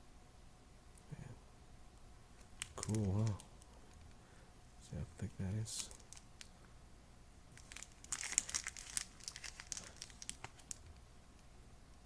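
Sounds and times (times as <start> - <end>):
packaging crinkling: 2.4 - 4.2, 5.7 - 6.5, 7.5 - 11.0.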